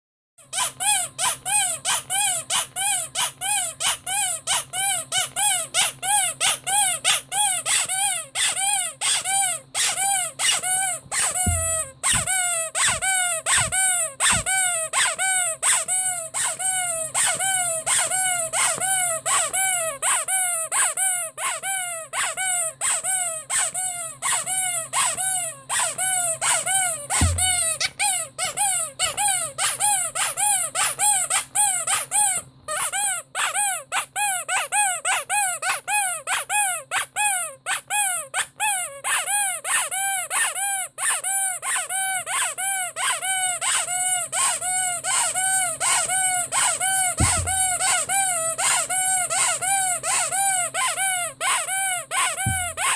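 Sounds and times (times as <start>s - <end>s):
rubber squeaky toy squeaking: 0.4s - 52.9s
soft bump: 11.4s - 13.0s, 13.6s - 14.6s, 27.2s - 27.9s, 47.2s - 47.8s, 52.5s - 52.9s.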